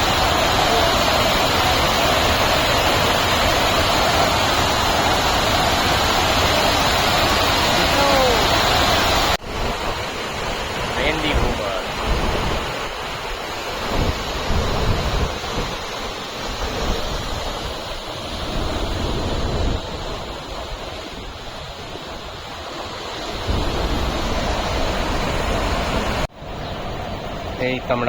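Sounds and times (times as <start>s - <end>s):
waterfall roaring: 0.0s - 28.0s
wind buffeting microphone: 9.2s - 27.6s.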